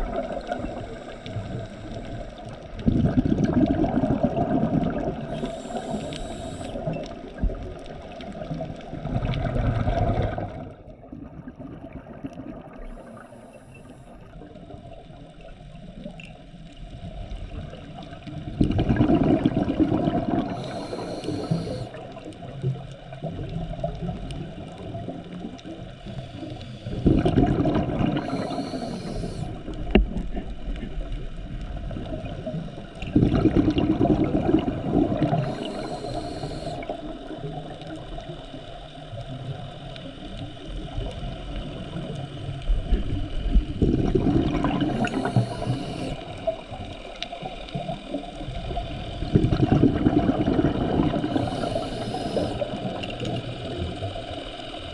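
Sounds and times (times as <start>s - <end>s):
diver breathing through regulator: 0.0s - 2.5s, 5.2s - 7.0s, 12.8s - 14.3s, 19.8s - 22.2s, 25.9s - 29.9s, 33.8s - 37.2s, 44.1s - 46.8s, 50.7s - 53.2s
bubbling exhalations: 0.0s - 7.1s, 18.6s - 22.2s, 26.4s - 29.7s, 33.0s - 37.0s, 43.7s - 46.7s, 48.6s - 53.5s
underwater background: 0.0s - 54.9s.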